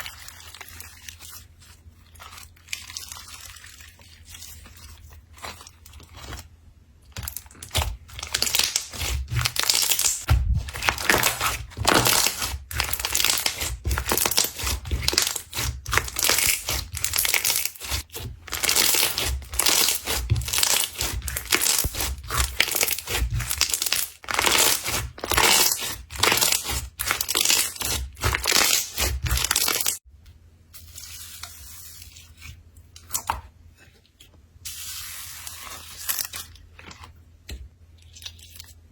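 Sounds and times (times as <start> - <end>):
slime squeezed crackling and popping: 7.1 - 30.0.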